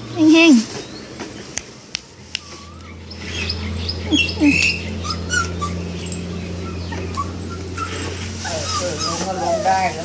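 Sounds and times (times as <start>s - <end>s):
puppy whimpering: 4.1s - 10.0s.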